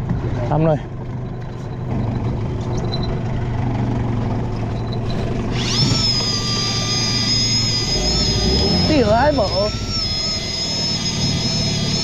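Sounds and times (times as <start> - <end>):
boat motor humming: 0.0 - 12.0
high steady whine: 4.8 - 12.0.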